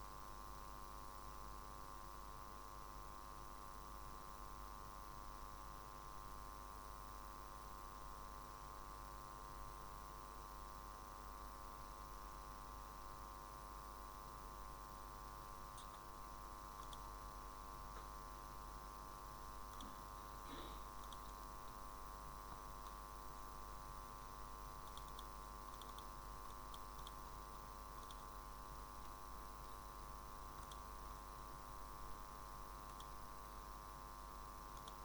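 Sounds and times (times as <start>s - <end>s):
steady electrical hum: 0.0s - 35.0s
faint clicks: 16.8s - 17.1s, 21.0s - 21.8s, 24.8s - 27.2s, 28.0s - 28.3s, 30.6s - 30.9s, 32.8s - 33.2s, 34.7s - 35.0s.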